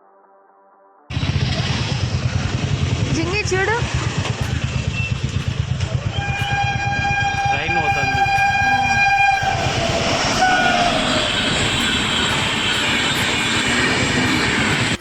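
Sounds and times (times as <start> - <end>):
train running past: 1.1 - 15.0
train horn blast: 6.1 - 12.8.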